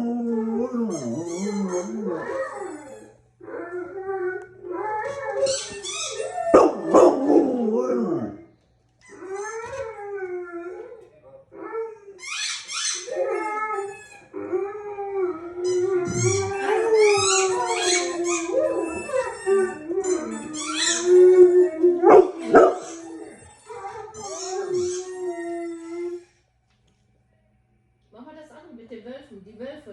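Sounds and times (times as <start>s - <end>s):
dog howling: 0.0s - 8.4s, 12.9s - 26.3s
dog yipping: 5.4s - 7.3s, 12.2s - 14.2s, 15.6s - 21.2s, 22.0s - 26.2s.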